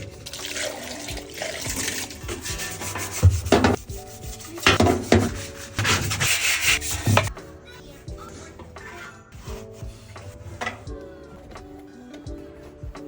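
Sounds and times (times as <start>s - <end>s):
scrubbing strokes: 0.0s - 7.4s
quiet background music: 0.0s - 13.0s.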